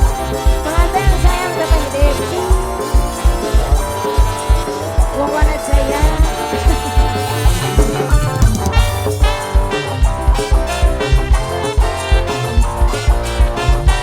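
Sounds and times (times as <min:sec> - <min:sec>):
music with heavy bass drum beat: 0:00.0 - 0:14.0.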